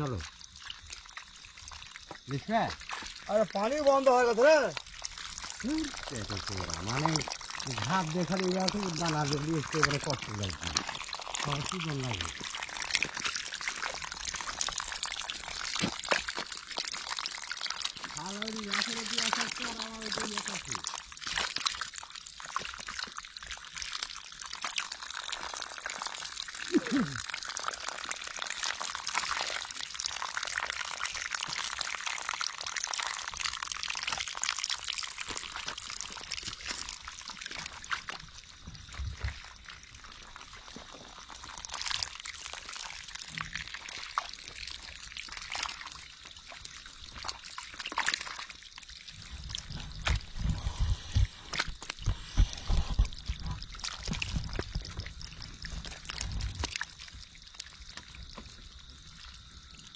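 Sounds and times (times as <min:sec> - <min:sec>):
water pouring and trickling: 0:00.0 - 0:59.9
dull low thumps: 0:49.7 - 0:53.6.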